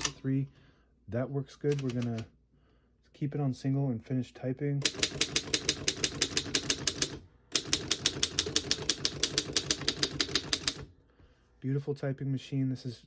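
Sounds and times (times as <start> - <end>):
manual typewriter typing: 0.0 - 0.2, 1.7 - 2.3, 4.8 - 10.9.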